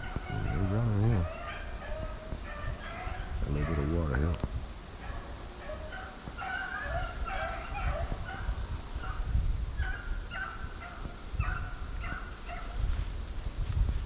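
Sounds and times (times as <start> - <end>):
hunting dogs baying: 0.0 - 4.2, 4.9 - 12.8
low rumble on microphone: 0.0 - 5.5.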